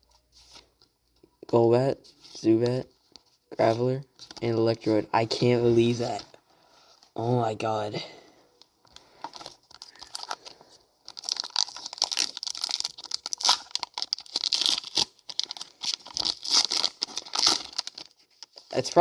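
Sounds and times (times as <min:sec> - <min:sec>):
foil wrapper crinkling and tearing: 0:08.9 - 0:19.0.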